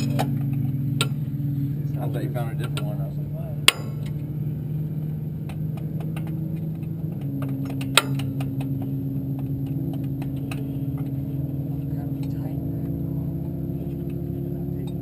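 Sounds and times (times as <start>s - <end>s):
hand tools clinking: 0.0s - 0.8s
engine idling: 0.0s - 15.0s.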